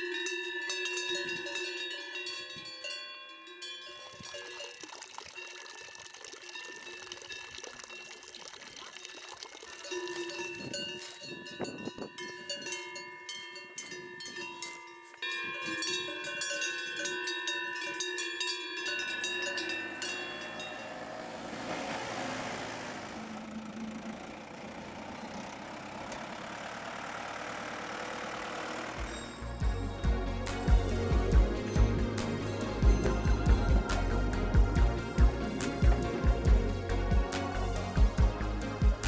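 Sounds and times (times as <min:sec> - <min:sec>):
cowbells clanking and ringing: 0:00.0 - 0:21.3, 0:28.2 - 0:34.9.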